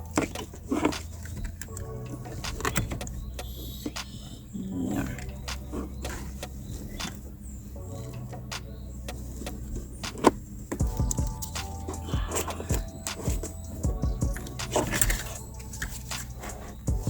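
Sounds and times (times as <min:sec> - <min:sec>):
car seat clicks and plastic rattles: 0:00.1 - 0:04.3, 0:09.2 - 0:13.8, 0:14.4 - 0:16.9.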